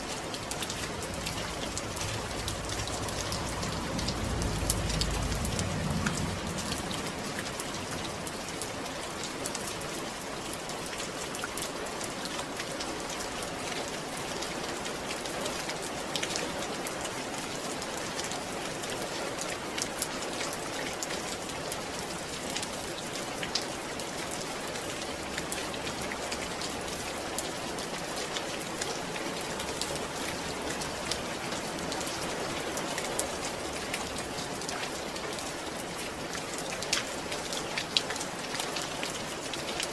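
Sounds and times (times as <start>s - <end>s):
raindrops ticking: 0.0s - 17.1s
steady rain falling: 0.0s - 39.9s
low rumble: 0.4s - 8.4s.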